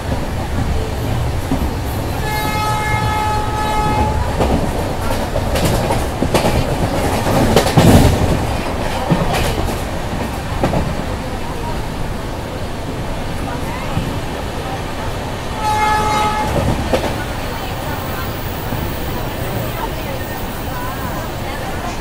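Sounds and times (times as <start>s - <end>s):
train rumbling: 0.0s - 22.0s
train horn: 2.2s - 4.6s, 15.6s - 17.2s.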